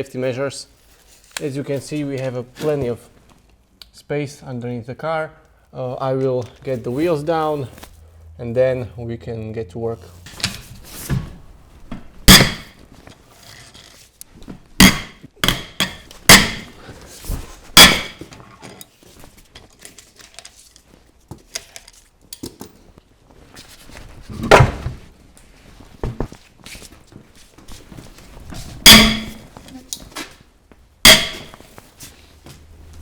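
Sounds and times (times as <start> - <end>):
car wheels thumping on garage floor: 12.0 - 12.8.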